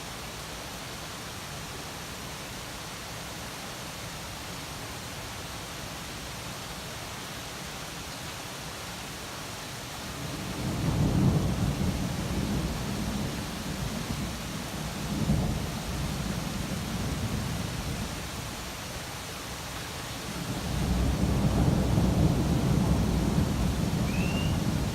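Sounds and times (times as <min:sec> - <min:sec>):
rain hissing: 0:00.0 - 0:24.9
thunder rolling: 0:20.5 - 0:24.9.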